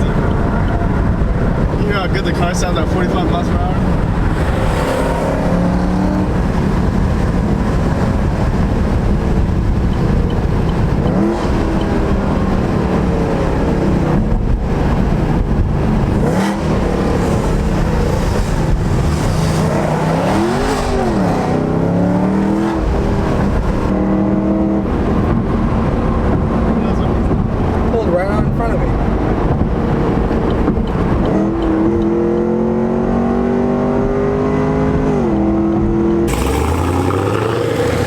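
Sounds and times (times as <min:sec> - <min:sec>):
car exhaust while driving: 0:00.0 - 0:38.0.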